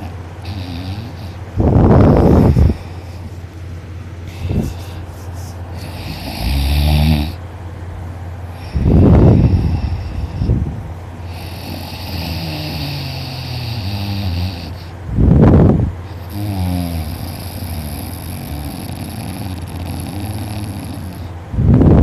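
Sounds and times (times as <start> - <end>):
man snoring loudly: 0.0 - 1.4, 5.8 - 7.4, 11.2 - 14.9, 16.1 - 21.4
wavering breathing: 0.0 - 7.4, 8.4 - 15.1.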